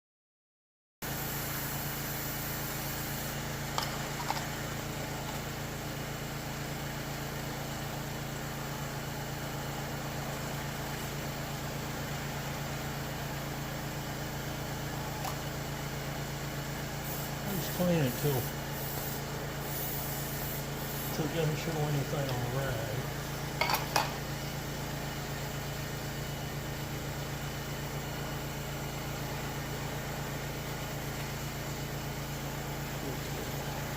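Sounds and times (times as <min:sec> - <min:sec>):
machine humming: 0:09.4 - 0:33.9.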